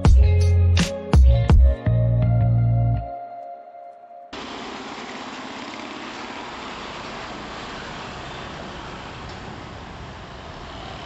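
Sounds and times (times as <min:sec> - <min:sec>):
road and wind noise hiss: 0:04.4 - 0:11.0.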